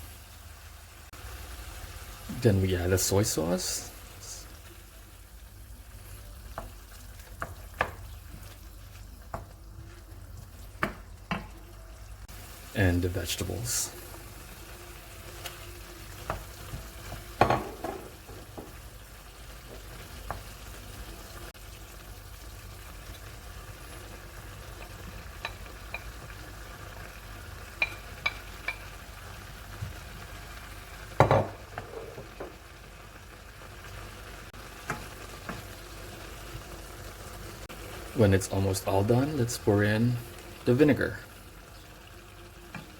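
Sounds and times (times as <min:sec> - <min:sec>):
food sizzling in a pan: 0:00.0 - 0:42.9
utensil knocking against pan: 0:31.2 - 0:32.5.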